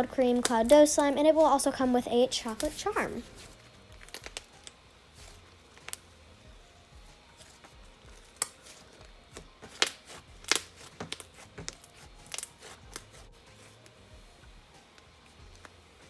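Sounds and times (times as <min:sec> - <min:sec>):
slime popping and crackling: 0:02.5 - 0:06.0, 0:08.1 - 0:13.3.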